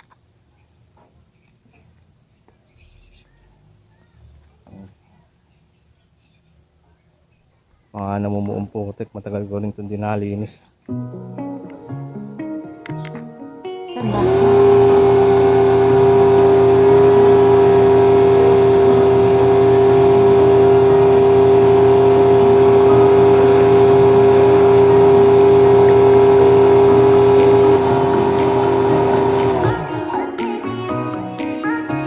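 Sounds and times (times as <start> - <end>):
pressure washer humming: 14.0 - 30.4.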